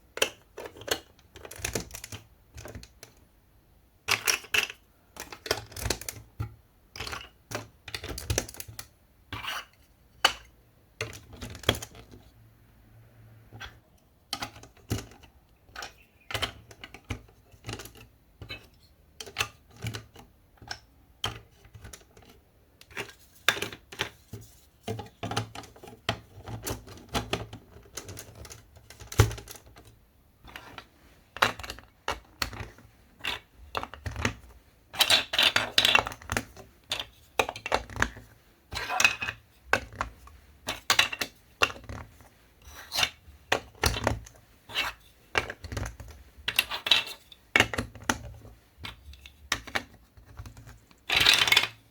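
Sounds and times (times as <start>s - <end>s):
marble run pieces clicking and knocking: 0.2s - 3.2s, 4.1s - 6.3s, 30.5s - 51.9s.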